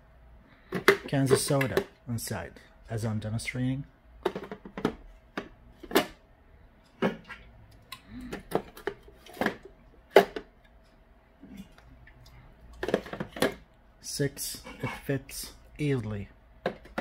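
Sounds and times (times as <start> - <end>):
cans knocking and clinking: 12.7 - 13.6.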